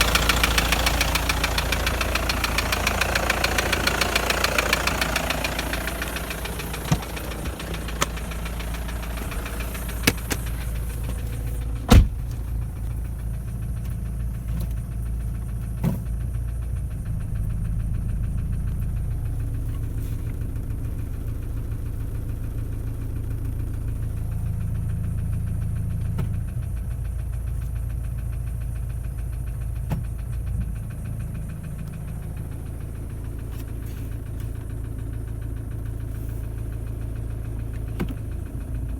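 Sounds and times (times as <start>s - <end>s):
diesel engine knocking: 0.0s - 38.9s
sharp clicks: 6.7s - 11.2s.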